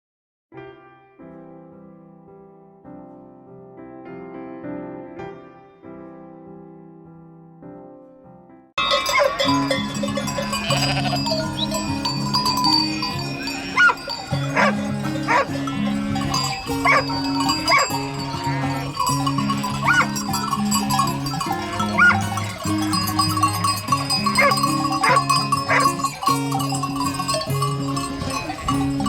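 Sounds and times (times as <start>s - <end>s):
farm animal calling: 8.8s - 29.0s.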